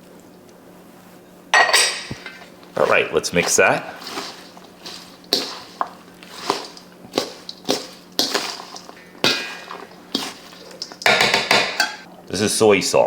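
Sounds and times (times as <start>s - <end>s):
utensil scraping mixing bowl: 2.0s - 12.1s.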